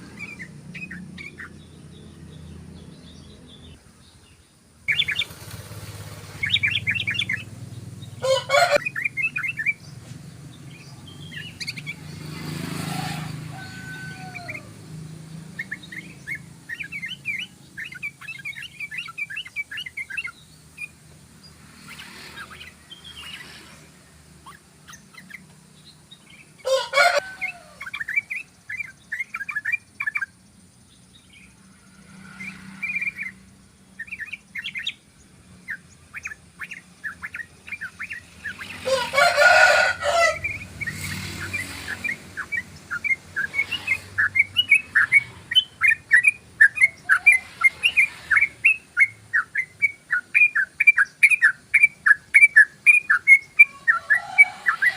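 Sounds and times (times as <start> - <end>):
bird chirping rapidly: 0.0 - 54.9
louder bird call: 11.2 - 14.7, 26.6 - 30.2, 36.2 - 54.9.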